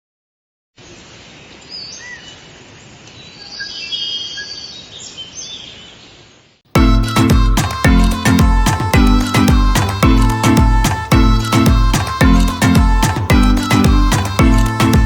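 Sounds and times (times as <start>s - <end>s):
background hiss: 0.8s - 15.0s
lovebirds chirping and whistling: 3.2s - 6.2s.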